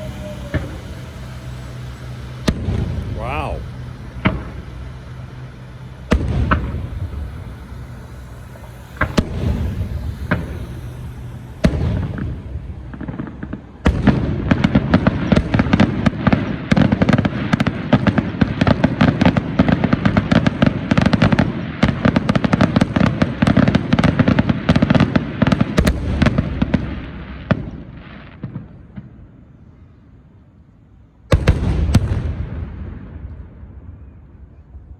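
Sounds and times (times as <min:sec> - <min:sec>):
rapid crackling firework pops: 0:00.0 - 0:29.3, 0:31.3 - 0:33.6
firework bangs with rumble: 0:09.0 - 0:29.2, 0:31.3 - 0:33.8.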